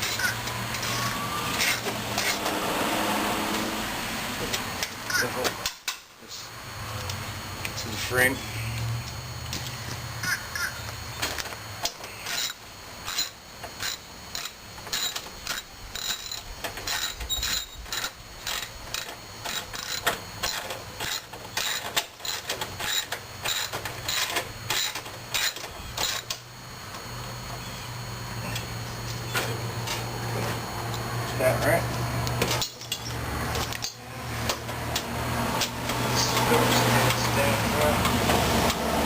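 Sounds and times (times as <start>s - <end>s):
ratchet wrench clicking: 12.3s - 26.4s.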